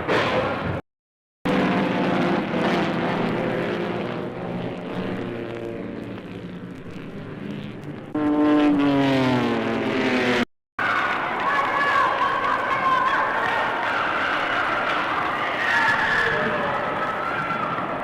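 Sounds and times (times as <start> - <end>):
racing cars passing by: 7.6 - 10.4.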